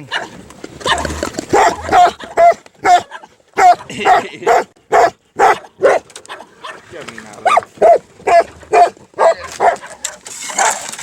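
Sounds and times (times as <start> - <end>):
dog barking: 0.1 - 6.8, 7.4 - 10.9.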